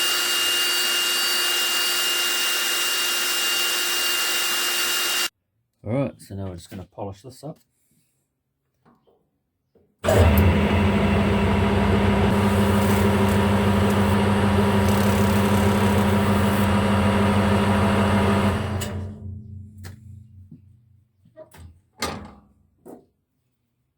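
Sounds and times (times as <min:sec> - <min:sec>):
cordless drill motor whine: 0:00.0 - 0:05.3, 0:10.0 - 0:19.1.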